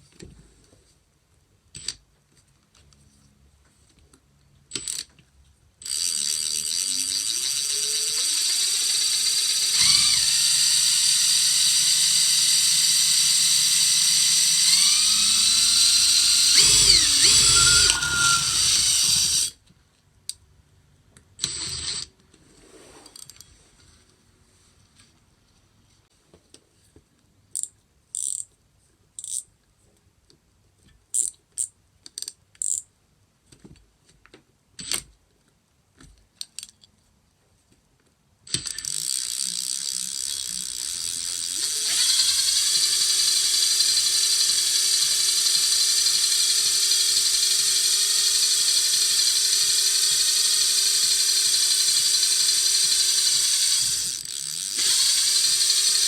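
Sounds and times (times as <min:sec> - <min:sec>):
impact wrench motor whining: 0:06.0 - 0:19.5, 0:38.8 - 0:56.0
sharp mechanical clicks: 0:07.4 - 0:19.5, 0:38.5 - 0:56.0.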